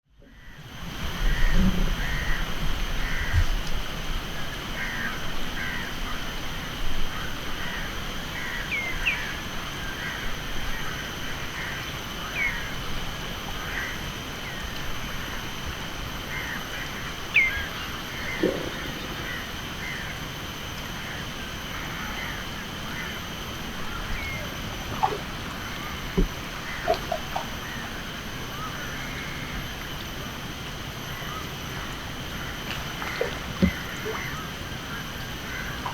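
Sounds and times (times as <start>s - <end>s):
crocodile low burp-like call: 18.3s - 20.0s.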